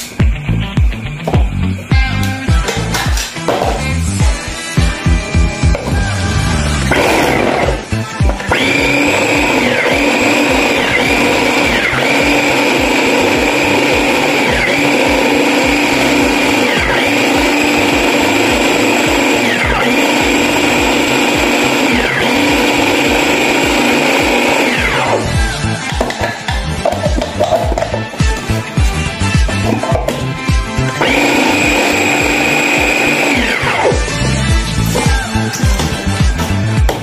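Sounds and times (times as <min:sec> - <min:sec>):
electric blender running: 0:05.0 - 0:26.0, 0:29.7 - 0:35.5.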